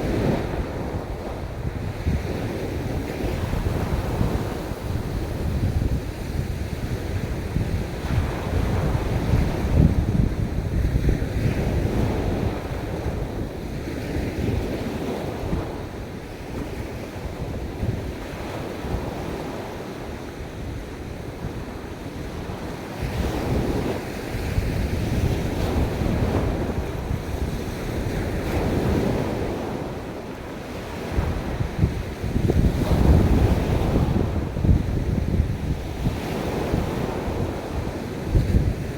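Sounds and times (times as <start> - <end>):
ocean waves on beach: 0.0 - 38.9
wind rumbling on microphone: 0.0 - 38.9.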